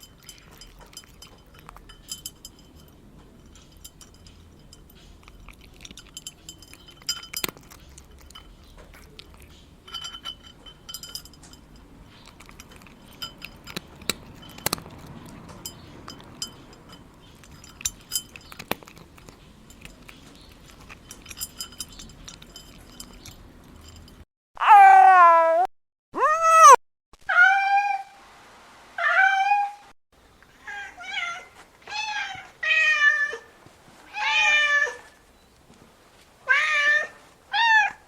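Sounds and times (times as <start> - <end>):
cat crunching food: 0.0 - 24.1
light clinks: 0.0 - 24.2.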